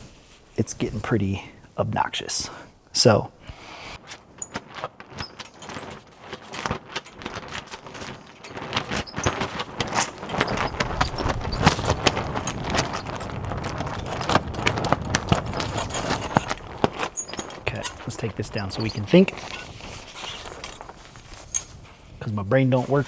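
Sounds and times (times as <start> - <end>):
flag flapping and snapping: 3.4 - 22.2
low rumble of wind: 9.2 - 23.0.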